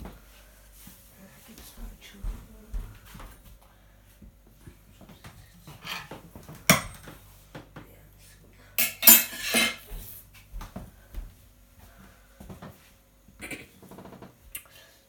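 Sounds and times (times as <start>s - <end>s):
kitchenware clattering: 5.8s - 7.2s, 8.8s - 10.0s.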